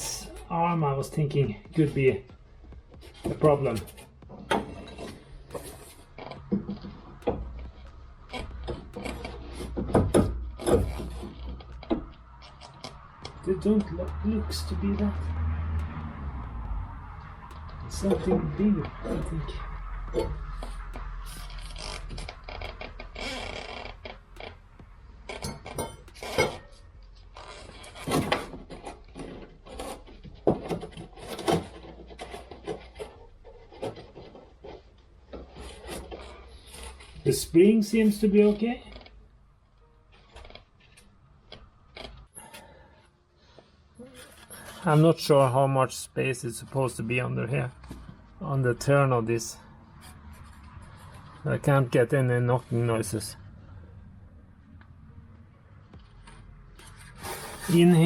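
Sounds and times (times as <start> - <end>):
knocks and clicks of suspension: 1.6 - 13.4.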